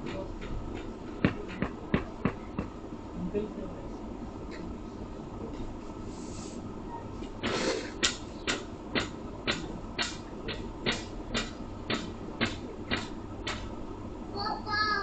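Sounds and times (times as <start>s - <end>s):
sharp knocks: 0.0s - 2.8s, 7.4s - 13.7s
steady low hum: 0.0s - 15.0s.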